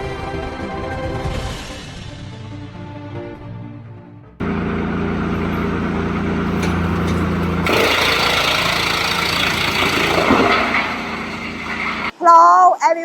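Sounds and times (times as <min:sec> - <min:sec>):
wood chipper humming: 0:04.4 - 0:12.1.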